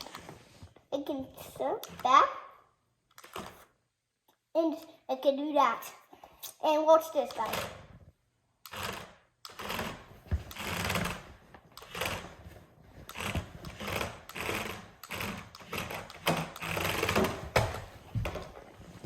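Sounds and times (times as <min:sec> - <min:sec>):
toy car electric motor whirring: 0:13.1 - 0:17.5.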